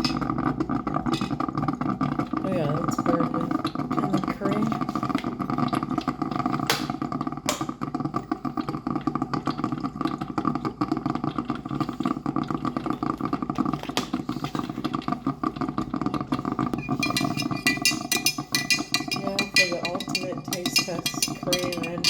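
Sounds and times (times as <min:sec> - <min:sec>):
spoon clinking against mug: 0:16.8 - 0:22.0.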